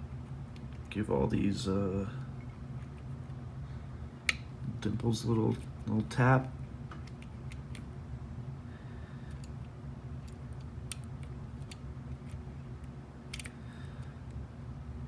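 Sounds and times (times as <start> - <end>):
steady low hum: 0.0 - 15.0
lock pick clicking: 7.0 - 7.8, 9.3 - 13.6.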